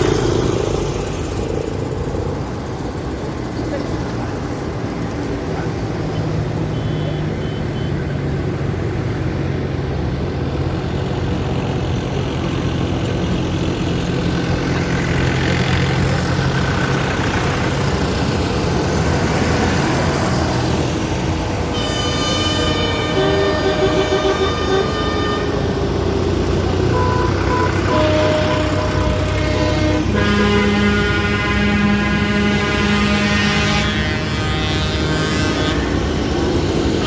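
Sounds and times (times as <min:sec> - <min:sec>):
diesel tractor engines: 0:00.0 - 0:37.0
vehicle horn: 0:21.7 - 0:37.0.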